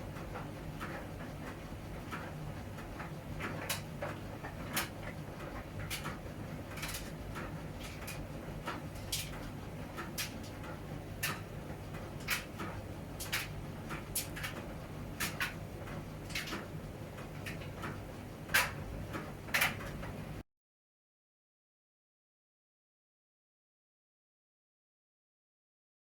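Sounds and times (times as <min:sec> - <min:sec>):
washing machine humming: 0:00.0 - 0:20.4.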